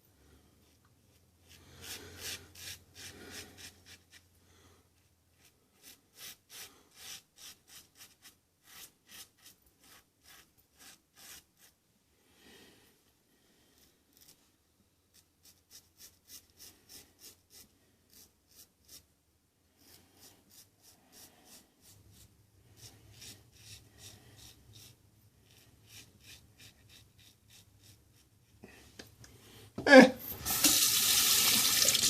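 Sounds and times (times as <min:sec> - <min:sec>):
razor scraping beard stubble: 0:01.5 - 0:04.2, 0:05.4 - 0:11.7, 0:15.1 - 0:19.1, 0:19.8 - 0:28.3.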